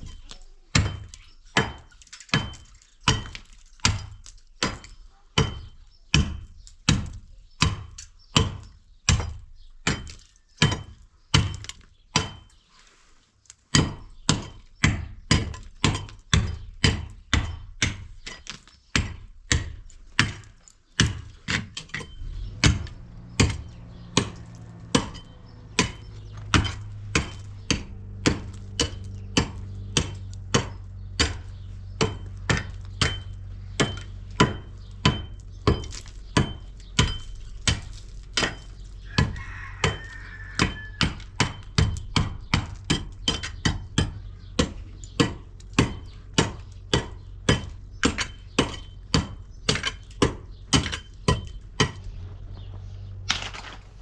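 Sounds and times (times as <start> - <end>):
low motor hum: 22.0 - 54.0.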